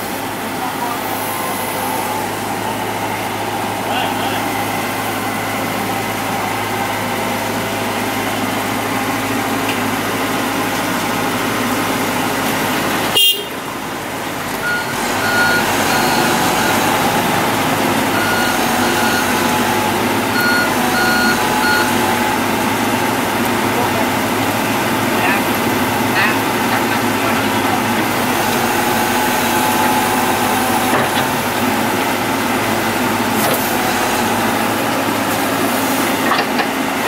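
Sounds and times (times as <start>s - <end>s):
heavy diesel machinery running: 0.0s - 37.0s
backup alarm beeping: 14.6s - 22.3s.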